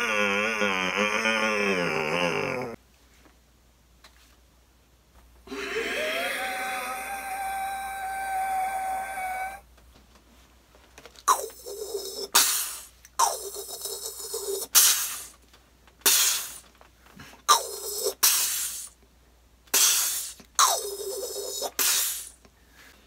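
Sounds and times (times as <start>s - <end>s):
mouth sound effects: 0.0s - 2.8s, 11.3s - 15.3s, 17.5s - 18.9s, 19.8s - 22.4s.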